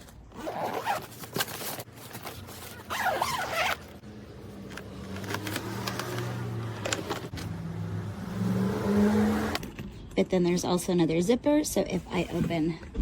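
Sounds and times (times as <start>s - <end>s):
scratchy handling noises: 0.0s - 7.5s
zipper being pulled: 0.3s - 1.5s, 2.6s - 4.0s.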